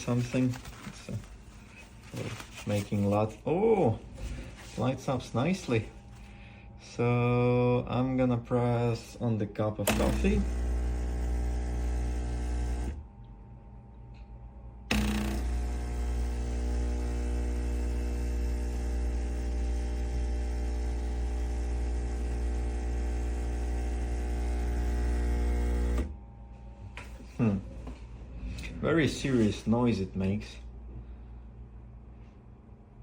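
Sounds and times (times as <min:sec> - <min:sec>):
espresso machine pump humming: 0:09.9 - 0:13.1, 0:14.9 - 0:26.1.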